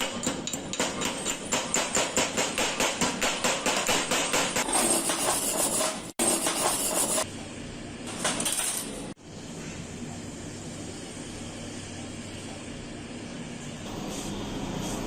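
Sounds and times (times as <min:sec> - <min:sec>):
hammer striking metal: 0:00.0 - 0:07.3.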